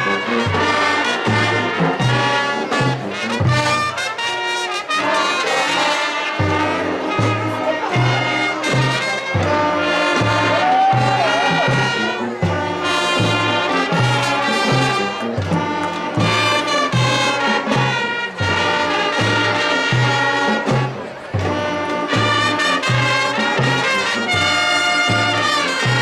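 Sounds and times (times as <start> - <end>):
marching band playing: 0.0 - 26.0.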